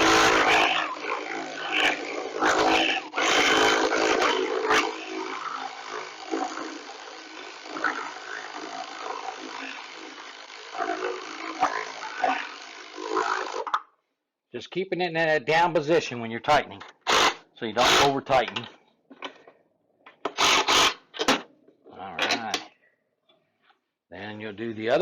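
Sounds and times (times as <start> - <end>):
power ratchet running: 0.0 - 13.8, 17.0 - 18.2, 20.3 - 21.1.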